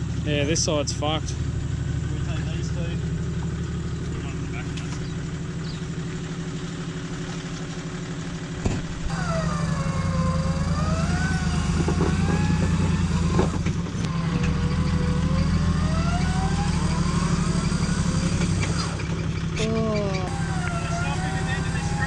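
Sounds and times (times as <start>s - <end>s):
off-road vehicle engine revving: 0.0s - 22.0s
rising and falling whine: 9.1s - 19.1s, 20.0s - 22.0s.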